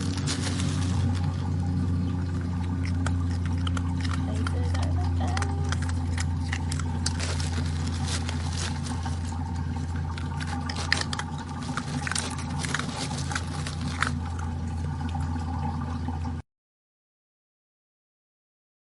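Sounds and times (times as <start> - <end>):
otter crunching ice: 0.0 - 15.4
steady low hum: 0.0 - 16.4.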